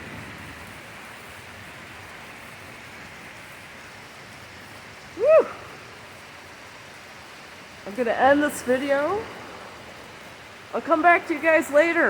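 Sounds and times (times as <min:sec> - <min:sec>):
rain falling: 0:00.0 - 0:12.0
person shouting woo: 0:05.2 - 0:05.7.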